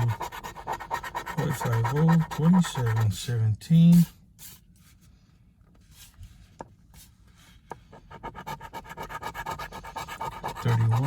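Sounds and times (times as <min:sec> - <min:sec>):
coin scratching lottery ticket: 0:00.0 - 0:03.2, 0:08.2 - 0:11.0.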